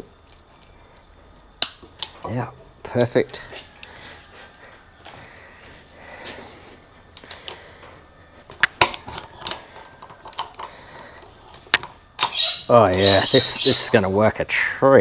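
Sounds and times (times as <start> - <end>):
metal parts and tools clinking: 7.1 - 7.7, 8.7 - 14.0.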